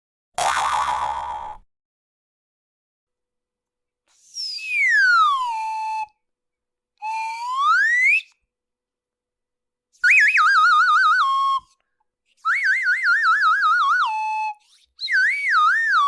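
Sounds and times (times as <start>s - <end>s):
sliding comedy whistle: 4.2s - 6.1s, 7.0s - 8.4s, 10.0s - 11.8s, 12.4s - 16.0s
warbling trilling whistle: 4.3s - 6.0s.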